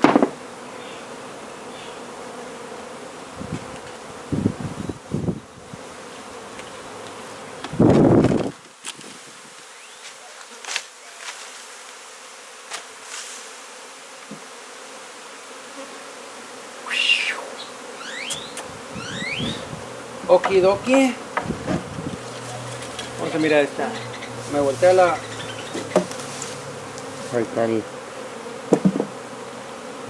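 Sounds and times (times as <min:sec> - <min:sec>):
bees buzzing: 0:00.0 - 0:08.5, 0:09.2 - 0:30.0
loud rustle: 0:12.7 - 0:13.6, 0:16.8 - 0:27.6
short rising squeaks: 0:16.8 - 0:19.8, 0:21.5 - 0:26.8.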